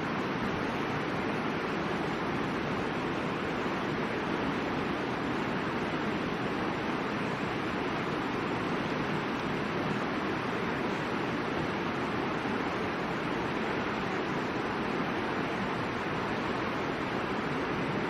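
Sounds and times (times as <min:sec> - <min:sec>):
mountain river rushing: 0:00.0 - 0:18.0.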